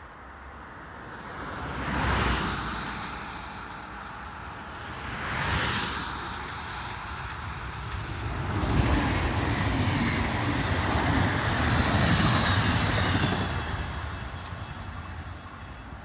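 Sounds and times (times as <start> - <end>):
electric train passing by: 3.9 - 16.0.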